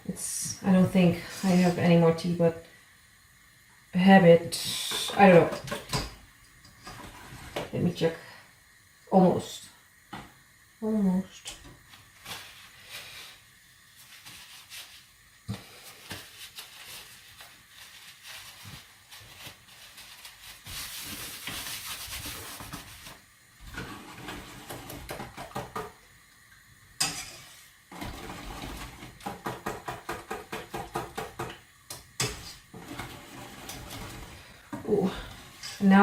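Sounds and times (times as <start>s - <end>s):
utensils clinking in bowls and pans: 27.0s - 31.6s, 32.2s - 36.0s.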